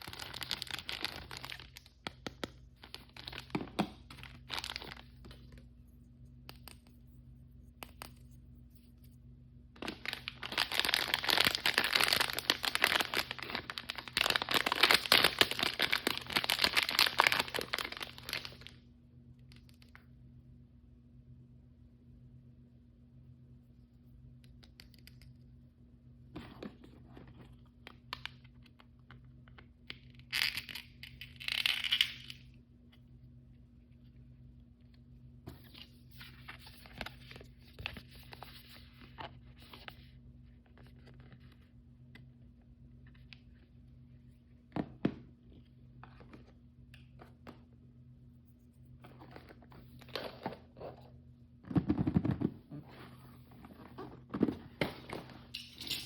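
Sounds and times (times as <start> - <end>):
faint steady hum: 0.0 - 56.0
plastic packaging tearing: 9.8 - 18.7.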